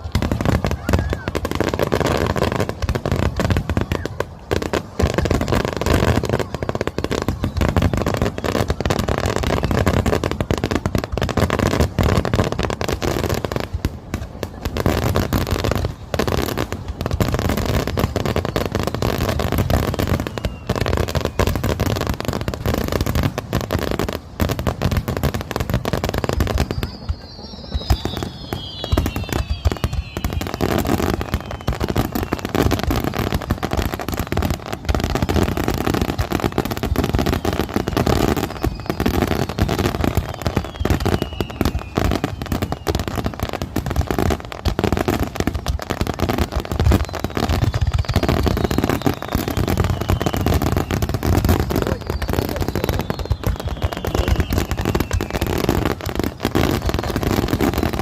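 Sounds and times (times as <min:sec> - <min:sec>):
fireworks bangs and crackling: 0:00.0 - 0:58.0
firework whistle falling in pitch: 0:25.9 - 0:33.2, 0:37.0 - 0:43.3, 0:46.8 - 0:58.0.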